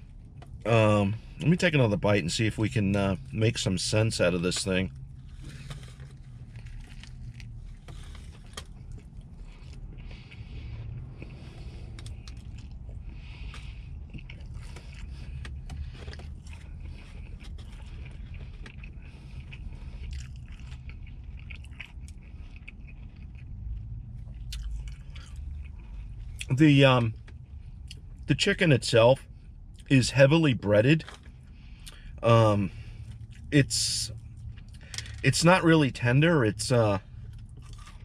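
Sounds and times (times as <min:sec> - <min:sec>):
crunchy chewing: 0:04.4 - 0:28.2, 0:37.0 - 0:38.0.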